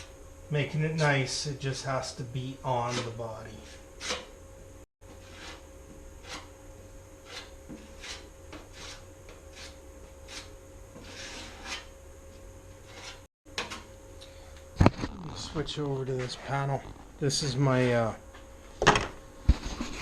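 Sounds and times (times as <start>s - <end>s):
faint steady hum: 0.0s - 20.0s
spreader scraping filler: 12.8s - 13.3s.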